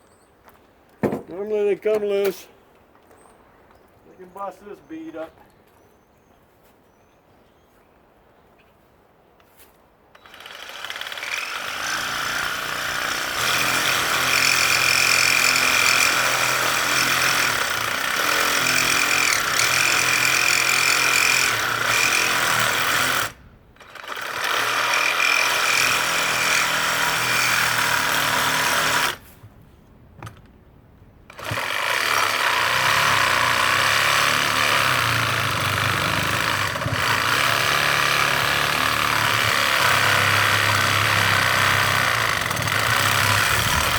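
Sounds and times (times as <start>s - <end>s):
reciprocating saw cutting metal: 10.2s - 29.2s, 31.3s - 43.9s.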